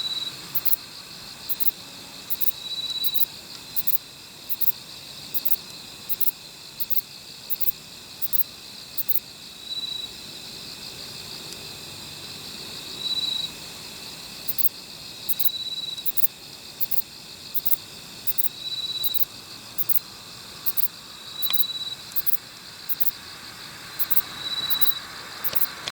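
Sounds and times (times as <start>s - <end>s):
faint insect trill: 0.0s - 25.9s
katydid high-pitched chirps: 2.3s - 4.7s, 14.5s - 14.7s, 15.3s - 17.0s, 17.6s - 20.0s, 20.7s - 23.1s, 24.0s - 25.8s.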